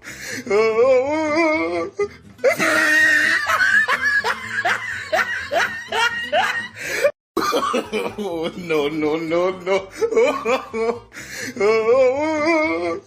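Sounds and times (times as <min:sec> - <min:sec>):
person laughing evilly: 0:01.5 - 0:13.0.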